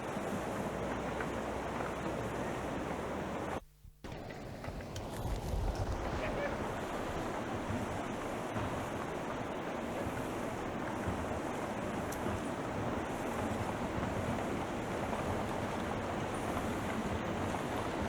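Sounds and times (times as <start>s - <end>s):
wind on microphone: 0.0s - 18.0s
faint ticks: 8.6s - 17.8s.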